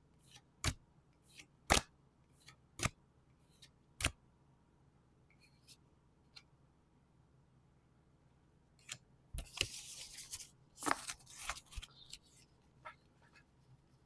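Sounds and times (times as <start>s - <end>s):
card sliding: 8.8s - 12.5s
faint card rustle: 8.8s - 14.0s.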